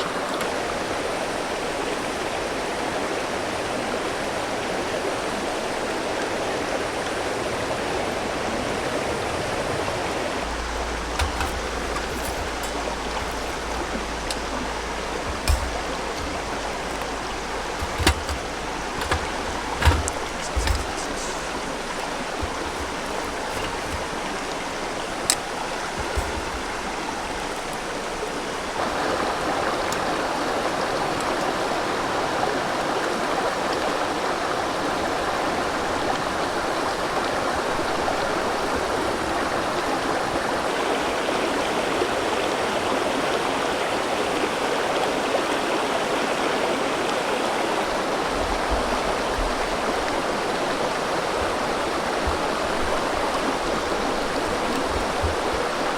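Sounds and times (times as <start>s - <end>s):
river water flowing: 9.3s - 41.4s, 46.0s - 55.9s.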